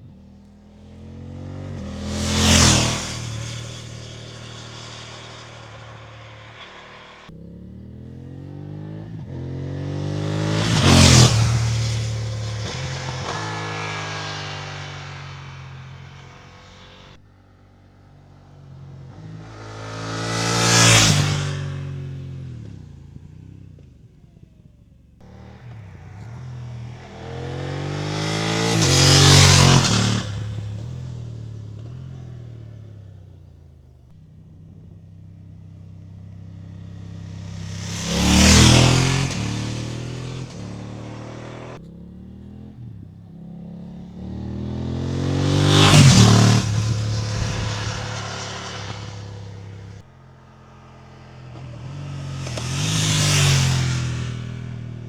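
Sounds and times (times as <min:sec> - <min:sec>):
motorcycle riding past: 0:00.0 - 0:55.0.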